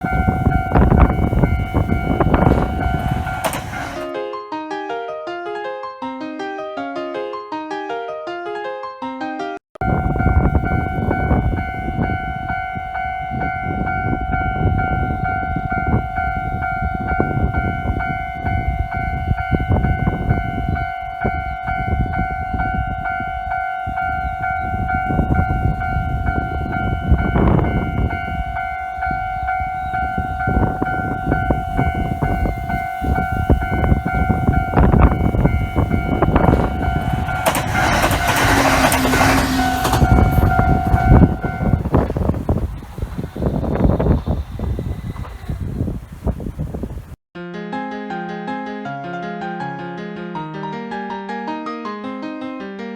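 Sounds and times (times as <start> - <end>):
level crossing warning bell: 0.0 - 4.1, 9.8 - 45.6
train rumbling and clattering: 0.0 - 4.1, 9.8 - 20.7, 24.2 - 46.6.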